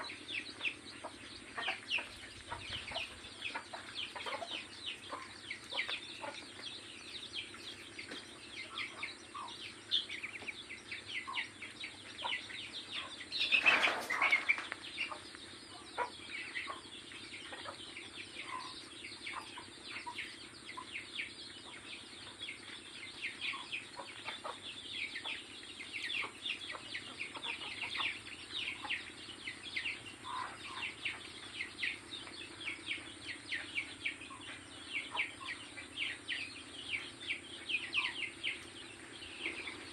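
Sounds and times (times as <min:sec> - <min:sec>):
birds chirping: 0:00.0 - 0:39.9
wings flapping: 0:13.5 - 0:14.8.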